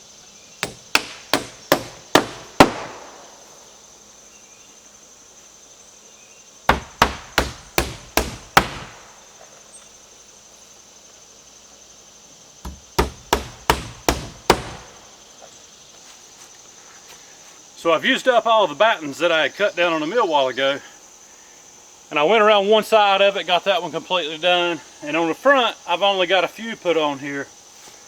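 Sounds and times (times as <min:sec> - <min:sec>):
high insect drone: 0:00.0 - 0:28.0
hammer driving nails into wood: 0:00.6 - 0:03.2, 0:06.7 - 0:09.1, 0:12.7 - 0:15.0.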